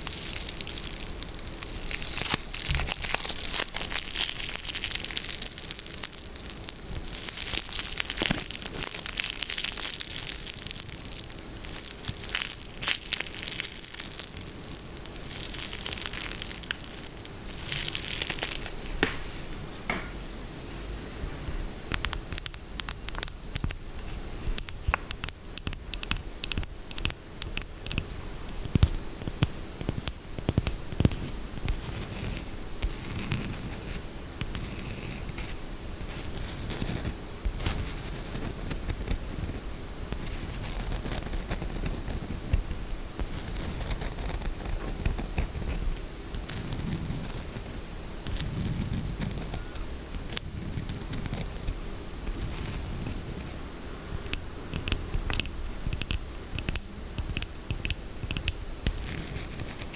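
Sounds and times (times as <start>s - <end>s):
scratching and tapping on soap: 21.9s - 23.9s, 24.5s - 33.8s, 54.1s - 59.9s.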